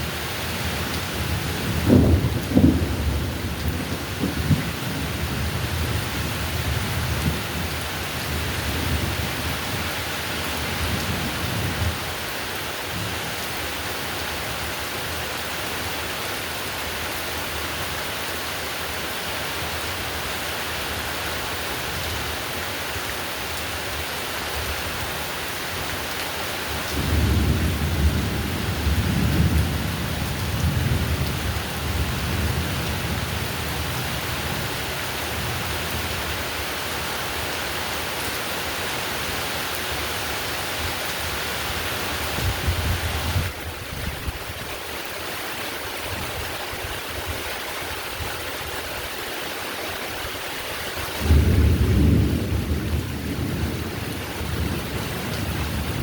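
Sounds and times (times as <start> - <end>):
heavy rain falling: 0.0 - 56.0
rolling thunder: 0.6 - 7.7, 27.0 - 33.5, 51.2 - 56.0.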